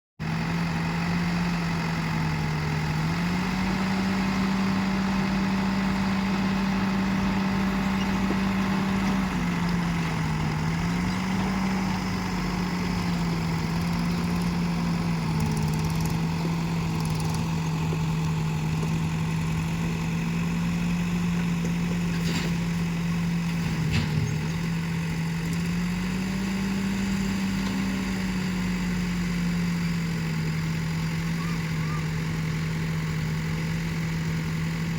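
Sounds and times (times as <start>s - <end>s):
backhoe diesel engine: 0.2s - 34.9s.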